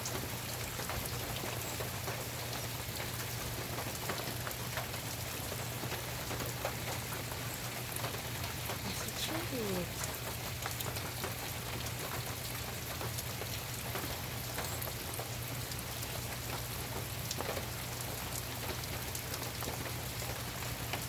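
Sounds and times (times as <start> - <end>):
steady rain hiss: 0.0 - 21.0.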